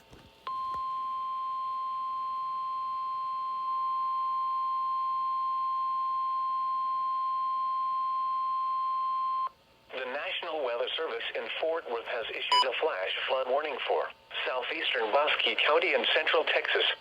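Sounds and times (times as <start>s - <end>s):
steady warning alarm beep: 12.5s - 12.7s.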